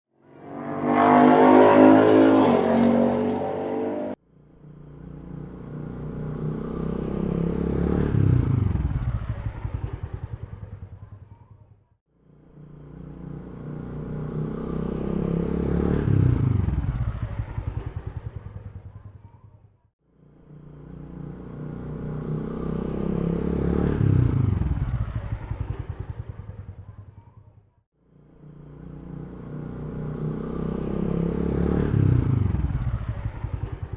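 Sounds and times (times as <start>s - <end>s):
engine passing with falling pitch: 0.1s - 10.8s, 12.3s - 18.9s, 20.2s - 26.8s, 28.1s - 33.9s.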